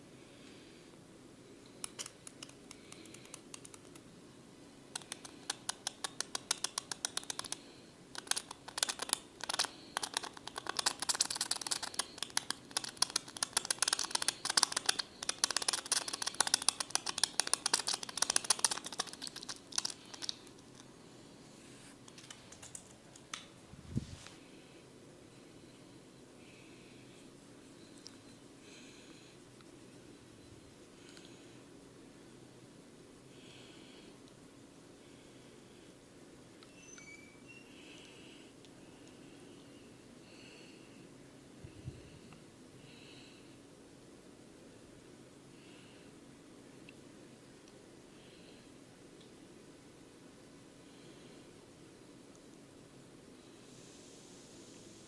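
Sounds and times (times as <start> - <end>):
hands clicking on head: 1.8 - 4.1, 5.0 - 20.5.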